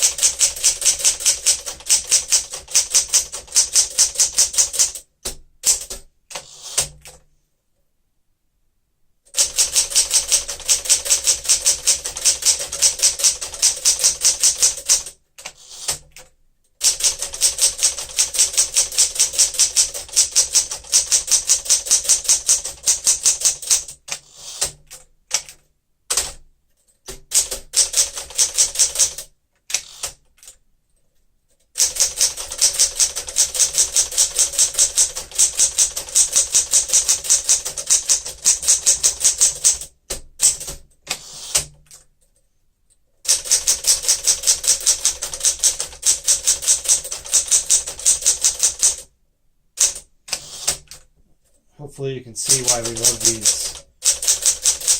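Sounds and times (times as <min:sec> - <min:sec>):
manual typewriter typing: 0:00.0 - 0:07.2, 0:09.3 - 0:30.6, 0:31.7 - 0:42.2, 0:43.3 - 0:49.1, 0:49.8 - 0:51.1, 0:52.4 - 0:54.9.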